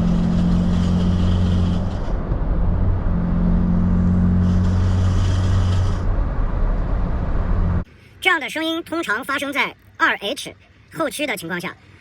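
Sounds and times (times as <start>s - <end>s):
axle droning while driving: 0.0s - 7.9s.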